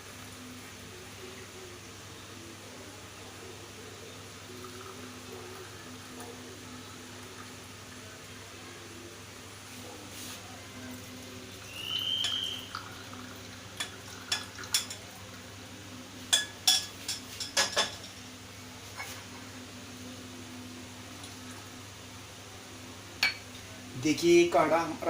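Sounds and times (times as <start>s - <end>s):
metal utensils clinking on pot: 13.8s - 15.1s, 16.3s - 18.2s.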